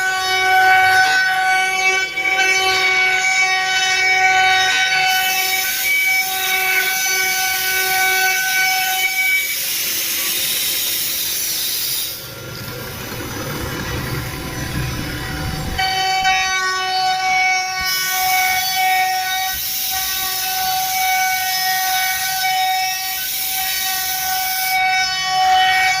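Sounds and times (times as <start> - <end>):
router spindle high whine: 0.0 - 26.0
rushing noise: 9.4 - 16.6.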